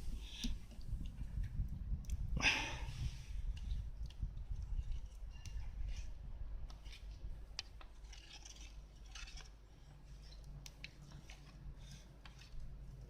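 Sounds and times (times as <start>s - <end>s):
low steady rumble: 0.0s - 13.0s
light scratching: 4.5s - 13.0s.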